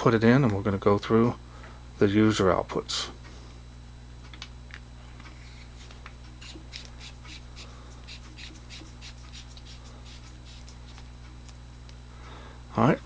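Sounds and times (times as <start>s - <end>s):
flashlight threads scratching: 5.3s - 11.6s.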